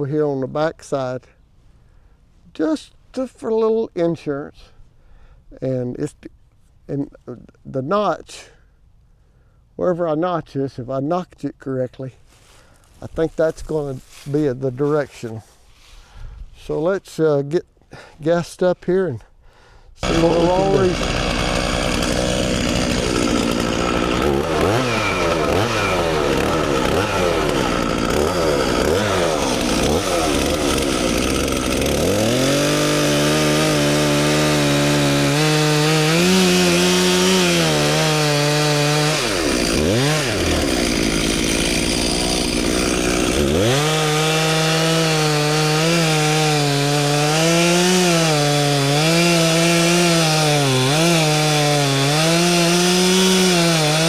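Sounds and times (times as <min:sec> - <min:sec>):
chainsaw revving and cutting wood: 0:20.0 - 0:54.0.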